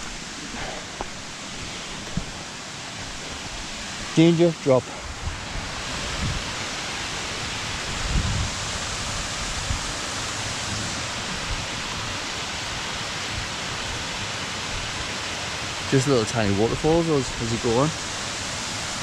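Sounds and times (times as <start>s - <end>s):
waterfall rushing: 0.0s - 19.0s
low thumps: 2.0s - 2.5s.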